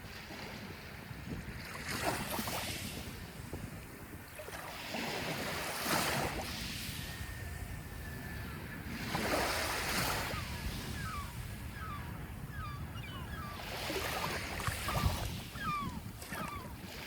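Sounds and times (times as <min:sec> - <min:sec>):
small waves washing onto shore: 0:00.0 - 0:07.9, 0:13.6 - 0:17.0
low rumble of wind: 0:00.0 - 0:17.0.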